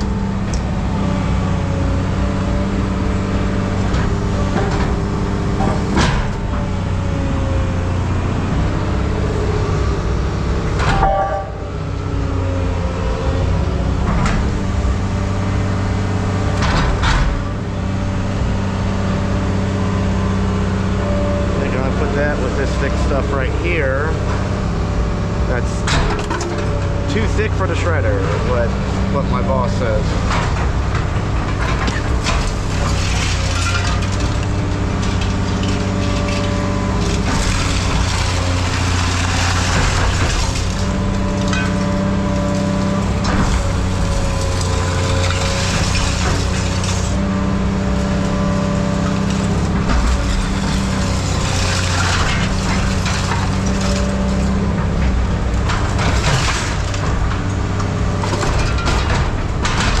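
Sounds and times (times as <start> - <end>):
heavy machine engine running: 0.0 - 60.0
scrap metal clanking: 25.5 - 47.3, 48.0 - 60.0.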